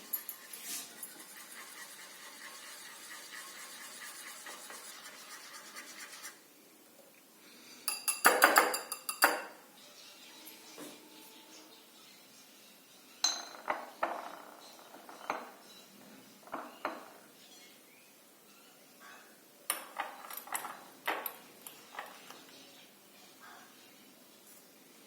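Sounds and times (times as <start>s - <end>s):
metal utensils clinking on dishes: 0.0s - 1.3s, 7.9s - 9.6s.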